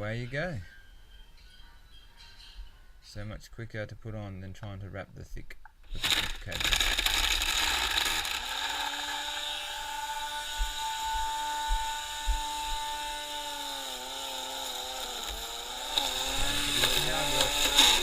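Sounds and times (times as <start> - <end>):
string trimmer motor running: 5.9 - 18.0.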